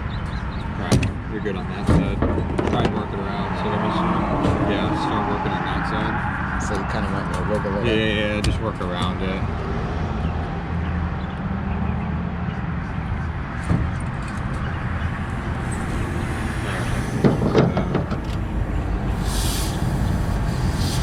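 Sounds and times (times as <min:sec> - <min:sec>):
low engine hum: 0:01.6 - 0:21.0
tire reamer rasping in puncture: 0:19.1 - 0:21.0
short hiss: 0:19.2 - 0:21.0.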